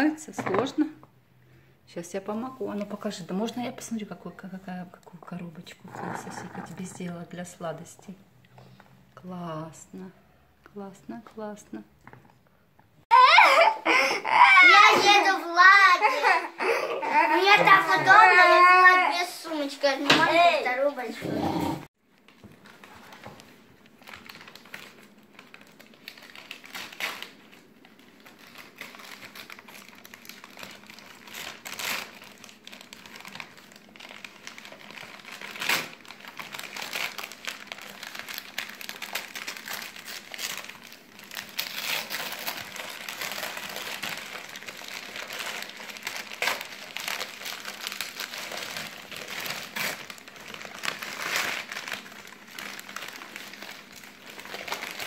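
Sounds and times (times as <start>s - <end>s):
gift wrapping paper crinkling: 22.0s - 55.0s.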